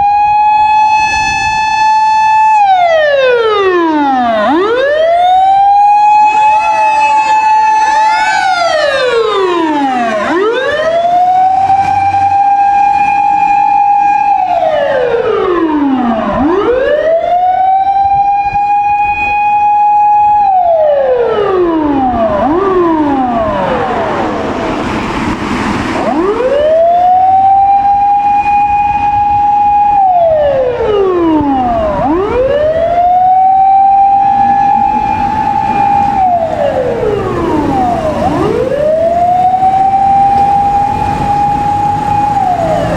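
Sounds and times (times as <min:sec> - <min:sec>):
fire engine siren wailing: 0:00.0 - 0:42.9
passing vehicle rush: 0:07.9 - 0:17.2, 0:20.6 - 0:42.9.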